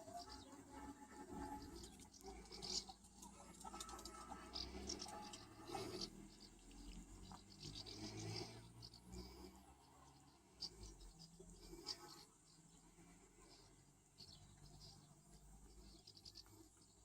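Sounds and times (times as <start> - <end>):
scratching and pattering clicks: 1.8 - 7.0.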